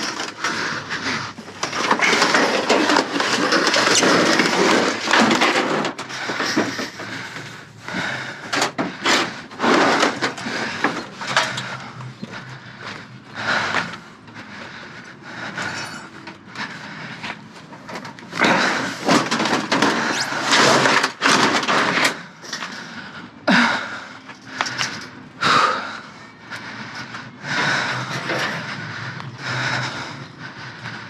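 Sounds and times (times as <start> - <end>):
junk clattering and scraping: 0.0 - 23.2.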